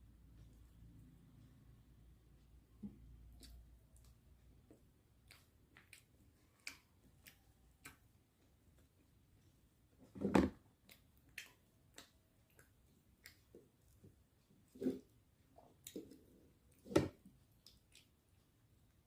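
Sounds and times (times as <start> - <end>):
person chewing: 5.1 - 9.0, 17.5 - 18.4.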